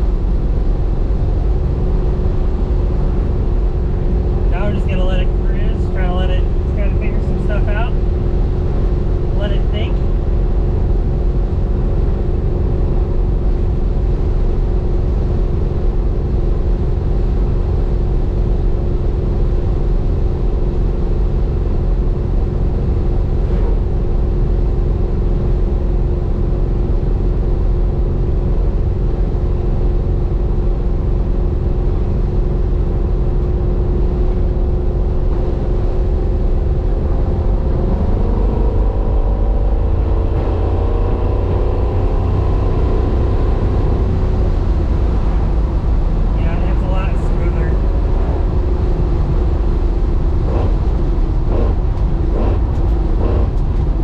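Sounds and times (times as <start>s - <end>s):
car engine running: 0.0s - 54.0s.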